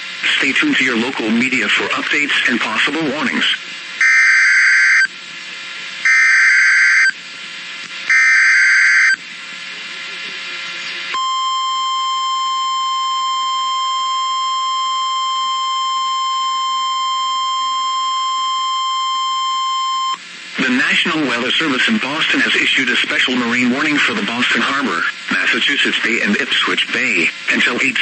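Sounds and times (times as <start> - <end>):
steady warning alarm tone: 4.0 - 5.1, 6.0 - 7.2, 8.1 - 9.2, 11.2 - 20.2.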